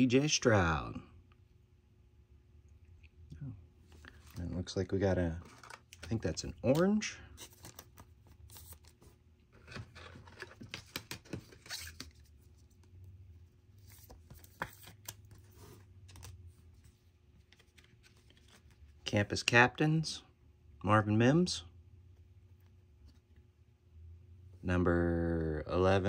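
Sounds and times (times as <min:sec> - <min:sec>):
trading cards being handled: 0:03.9 - 0:19.0.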